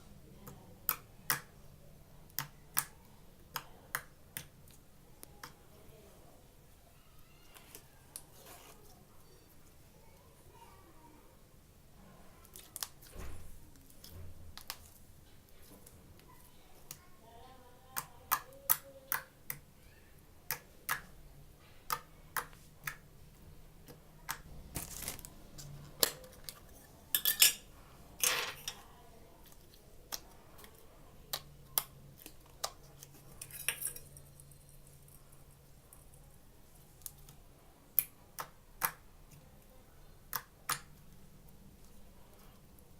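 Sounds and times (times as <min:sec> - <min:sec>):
clicks and taps of slime containers: 0:00.4 - 0:01.6, 0:02.2 - 0:05.6, 0:14.5 - 0:14.9, 0:17.9 - 0:19.7, 0:20.5 - 0:21.2, 0:21.8 - 0:23.1, 0:23.8 - 0:24.6, 0:29.4 - 0:33.1, 0:38.0 - 0:39.4, 0:40.2 - 0:41.2.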